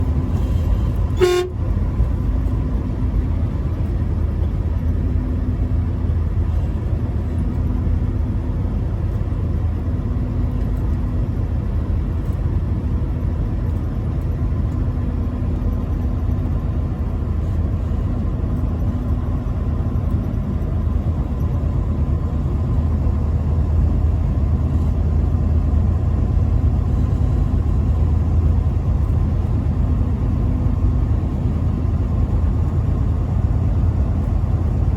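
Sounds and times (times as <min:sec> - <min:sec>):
truck engine and road noise: 0:00.0 - 0:34.9
truck horn: 0:00.3 - 0:01.8.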